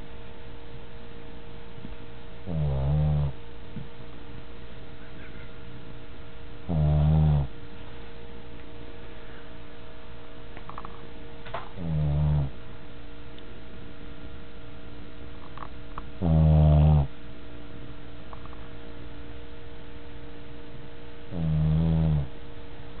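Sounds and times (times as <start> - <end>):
dog snoring: 2.4 - 3.4, 6.6 - 7.6, 11.8 - 12.6, 15.5 - 17.1, 21.3 - 22.4.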